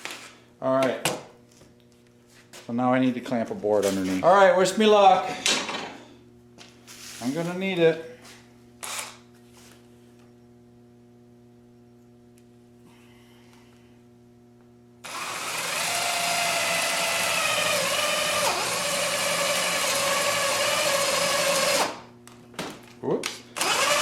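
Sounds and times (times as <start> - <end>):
low hum: 8.0 - 15.1
cordless drill boring wood: 15.0 - 22.0, 23.6 - 24.0.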